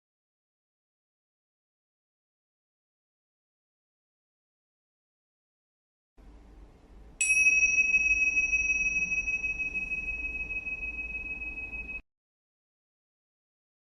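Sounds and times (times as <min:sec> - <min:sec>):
small metal bell ringing: 0:07.2 - 0:12.0.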